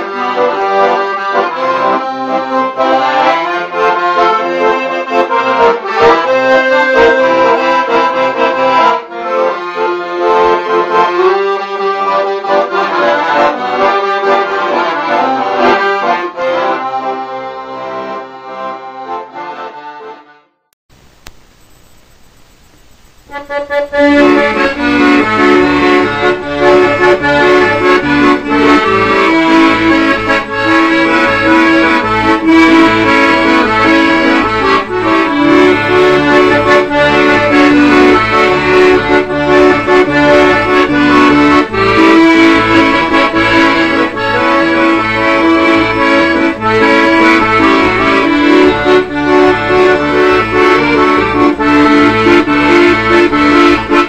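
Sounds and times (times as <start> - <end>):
instrumental background music: 23.3 - 54.0.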